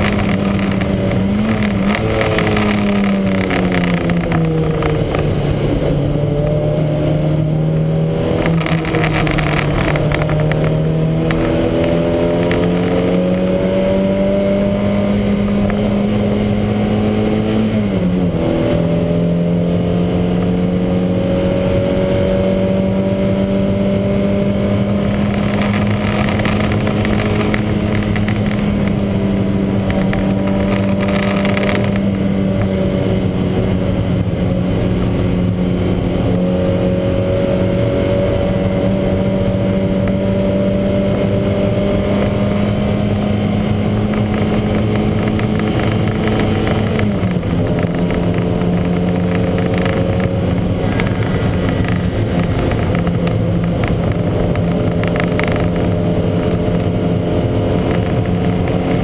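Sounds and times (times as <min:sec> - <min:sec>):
race car engine at high revs: 0:00.0 - 0:59.0.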